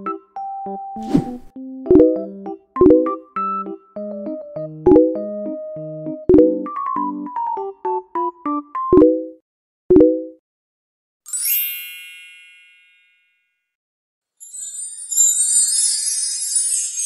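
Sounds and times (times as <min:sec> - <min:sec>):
high sleigh bell jingling: 0:14.4 - 0:17.0.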